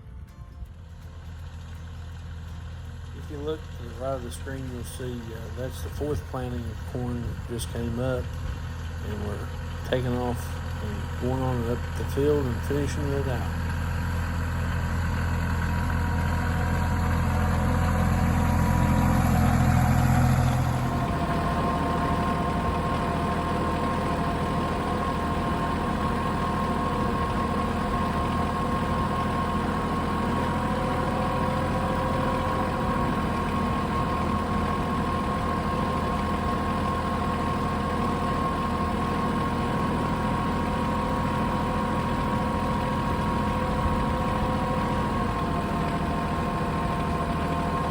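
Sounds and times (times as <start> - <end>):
tractor engine running: 0.0 - 47.9
steady high whine: 16.0 - 42.1.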